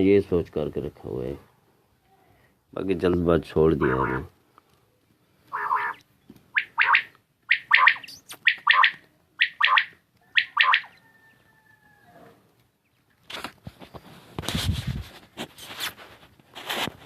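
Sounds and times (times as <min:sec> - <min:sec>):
quail calling: 0:03.8 - 0:04.3, 0:05.5 - 0:11.3.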